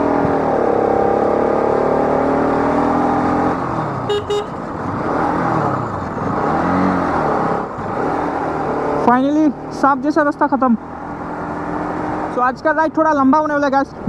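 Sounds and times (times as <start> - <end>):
motorcycle engine running: 3.6 - 7.9
horn beeping: 4.1 - 4.8.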